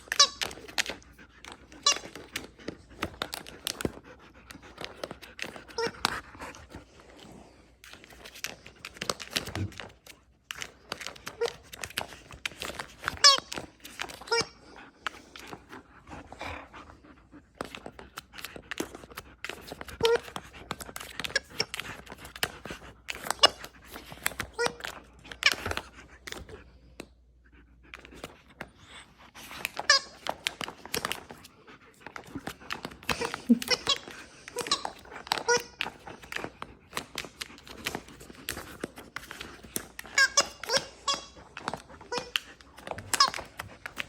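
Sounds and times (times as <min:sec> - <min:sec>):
dog panting: 0:00.7 - 0:08.6, 0:14.6 - 0:24.1.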